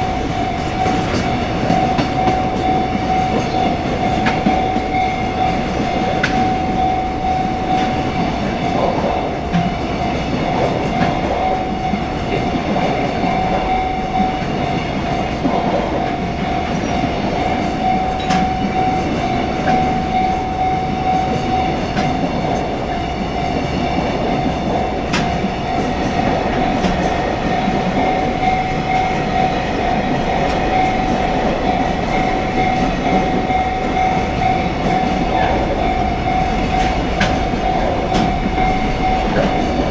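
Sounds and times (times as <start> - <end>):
level-crossing bell ringing: 0.0 - 39.9
train passing rumble: 0.0 - 39.9.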